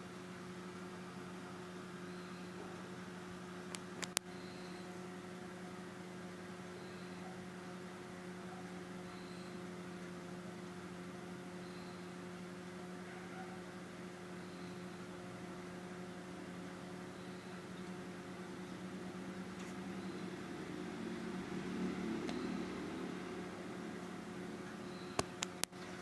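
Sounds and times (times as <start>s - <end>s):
low electrical hum: 0.0s - 26.0s
sharp clicks: 3.7s - 4.3s, 25.2s - 25.8s.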